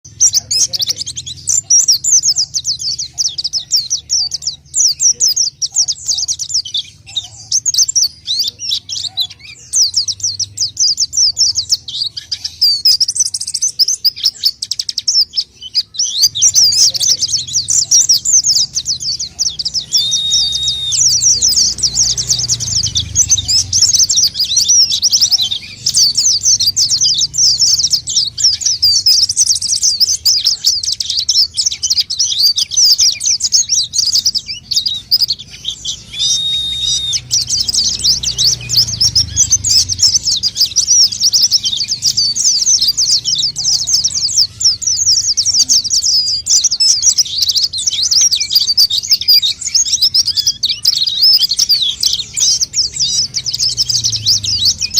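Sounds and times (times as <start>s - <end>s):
bird twittering song: 0.0s - 54.9s
bird steady whistle: 12.6s - 54.9s.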